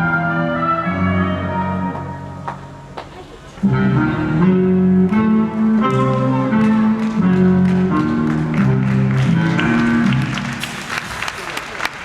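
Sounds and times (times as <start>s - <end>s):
show music held chords: 3.6s - 10.8s
audience applause: 5.9s - 12.0s.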